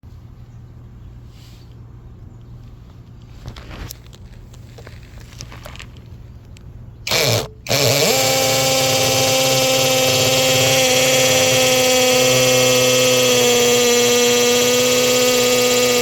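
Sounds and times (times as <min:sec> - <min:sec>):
hammer drill running: 0:07.1 - 0:16.0.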